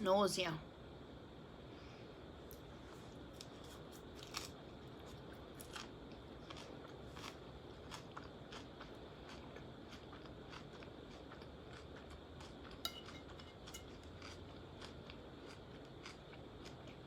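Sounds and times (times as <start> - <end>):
chewing crunchy salad: 2.5 - 17.0.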